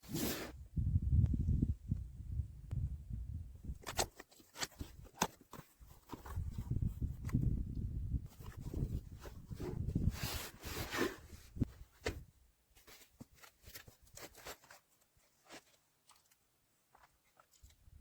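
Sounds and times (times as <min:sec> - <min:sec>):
rustling and handling noise: 0:03.6 - 0:18.0.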